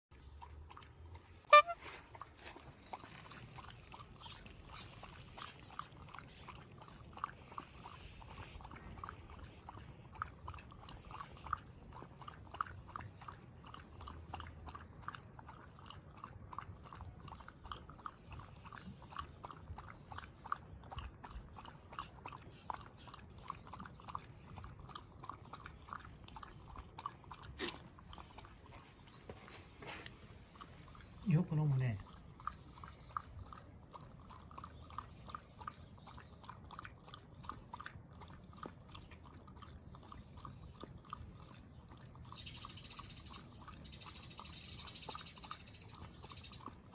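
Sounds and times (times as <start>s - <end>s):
dog lapping water: 0.1s - 46.9s.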